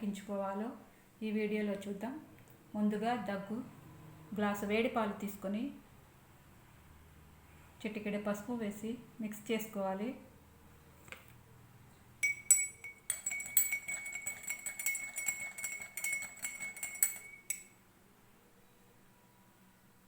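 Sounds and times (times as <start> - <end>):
spoon clinking against glass: 12.2 - 17.8.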